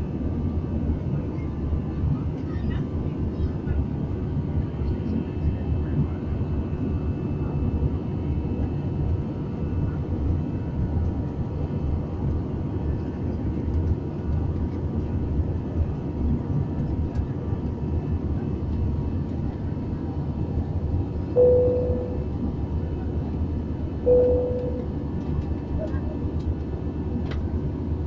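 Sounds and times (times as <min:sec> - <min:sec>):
airliner cabin engine rumble: 0:00.0 - 0:28.0
faint steady hum: 0:21.3 - 0:22.4, 0:24.0 - 0:25.0.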